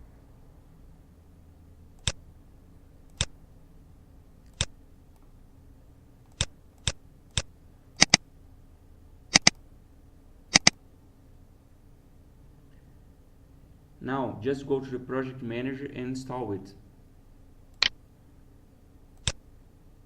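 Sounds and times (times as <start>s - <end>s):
computer mouse clicks: 2.0s - 2.2s, 3.1s - 3.4s, 4.4s - 5.3s, 6.3s - 8.2s, 9.3s - 9.6s, 10.5s - 10.8s, 19.2s - 19.4s.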